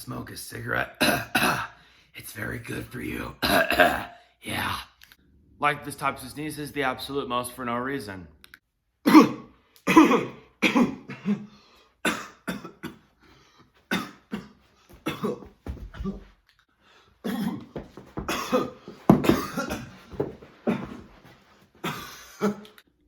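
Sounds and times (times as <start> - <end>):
man coughing: 1.0 - 1.8, 3.4 - 4.2, 9.0 - 13.1, 13.9 - 16.2, 17.2 - 22.8.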